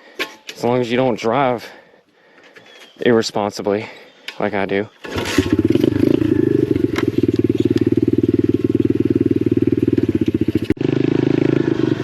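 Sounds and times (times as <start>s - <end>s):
motorcycle engine running: 5.1s - 12.0s.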